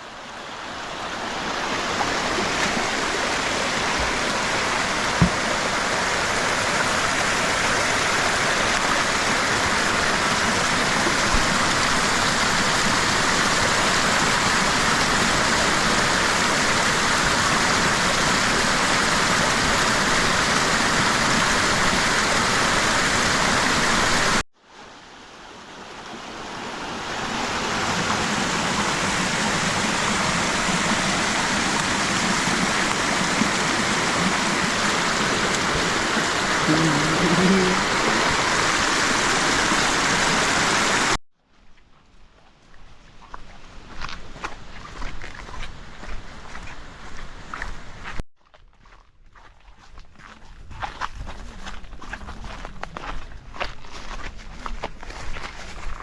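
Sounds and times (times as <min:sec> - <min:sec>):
loud rush of water: 0:00.0 - 0:41.2.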